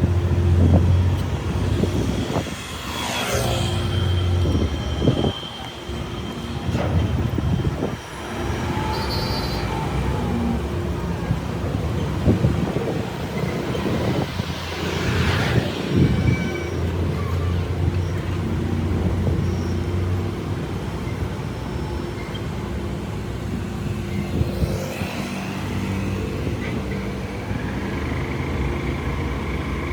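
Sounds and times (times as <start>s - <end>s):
road traffic engine hum: 0.0s - 29.9s
rush of traffic noise: 0.0s - 29.9s.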